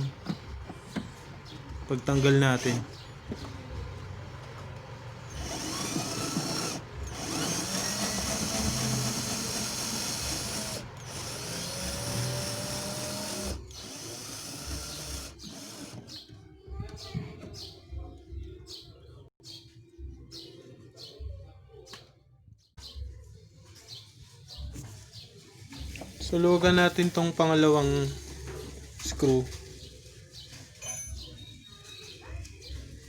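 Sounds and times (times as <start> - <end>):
cordless drill running: 2.5 - 2.9, 5.3 - 16.0.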